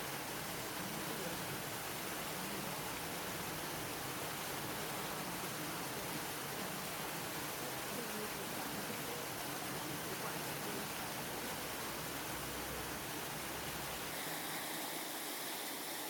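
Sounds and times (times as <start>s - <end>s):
faint voices: 0.7s - 13.0s.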